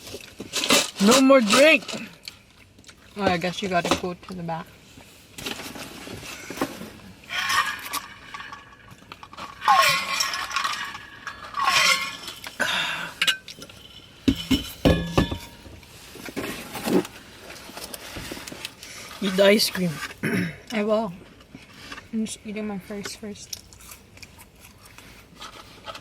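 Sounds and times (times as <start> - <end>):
straw squeaking in lid: 7.3 - 8.8, 9.4 - 12.6.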